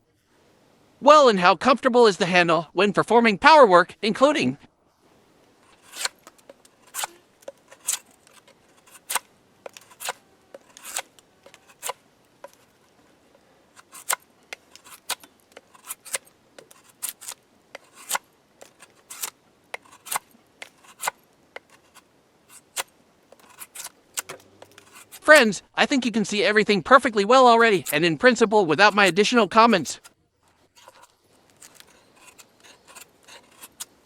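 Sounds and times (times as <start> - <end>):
knife carving wood: 5.5 - 25.5, 27.5 - 28.0, 28.8 - 34.0.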